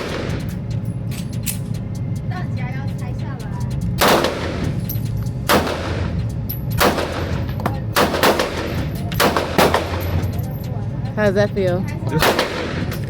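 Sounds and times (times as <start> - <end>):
steady low rumble: 0.0 - 13.0
handgun shots with ringing tail: 4.0 - 4.8, 5.5 - 6.1, 6.8 - 10.2, 12.2 - 13.0.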